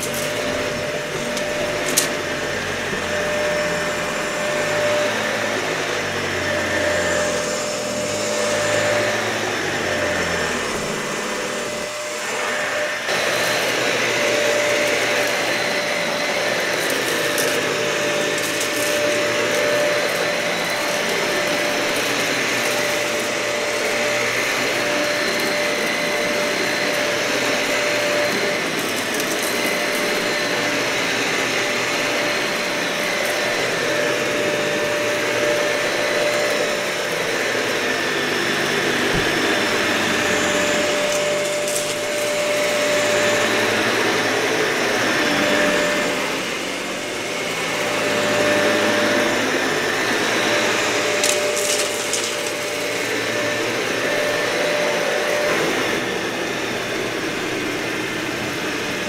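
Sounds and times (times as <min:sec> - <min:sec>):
vacuum cleaner on carpet: 0:00.0 - 0:59.0.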